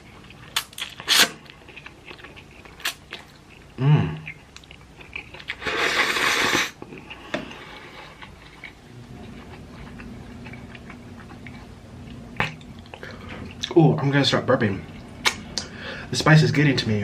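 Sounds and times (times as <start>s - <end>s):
loud slurp of noodles: 5.6s - 6.8s.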